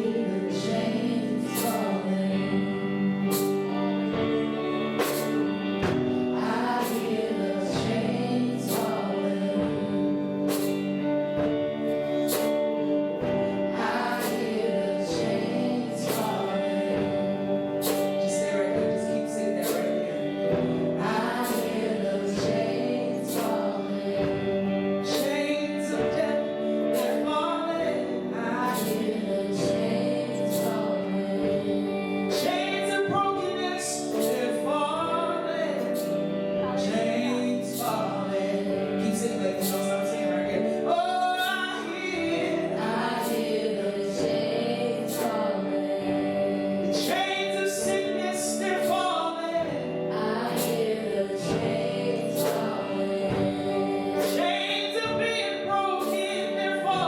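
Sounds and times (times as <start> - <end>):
singers with gliding voices: 0.0 - 57.0.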